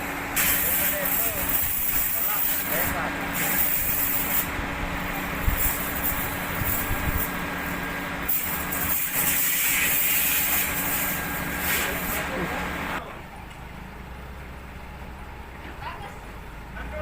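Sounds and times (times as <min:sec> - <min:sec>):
machinery hiss: 0:00.0 - 0:04.5, 0:08.3 - 0:13.0
sawmill engine drone: 0:00.0 - 0:17.0.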